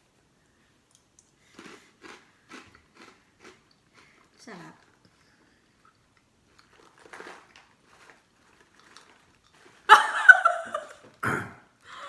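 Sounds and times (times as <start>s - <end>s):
chewing crunchy snack: 0.9s - 9.9s.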